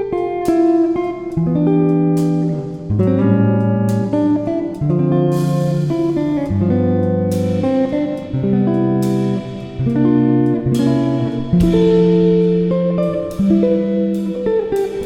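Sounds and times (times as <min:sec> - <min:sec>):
guitar background music: 0:00.0 - 0:15.0.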